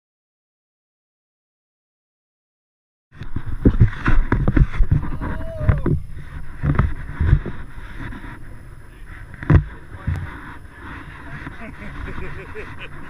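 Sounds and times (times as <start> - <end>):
low knocks and thumps: 3.2 - 13.0
rushing wind and water: 3.2 - 13.0.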